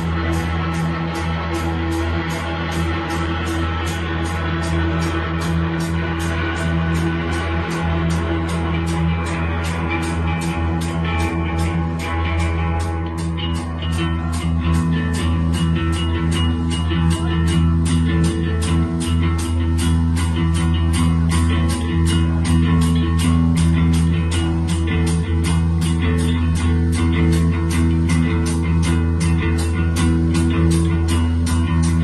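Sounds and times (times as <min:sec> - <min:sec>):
rock band playing: 0:00.0 - 0:32.0.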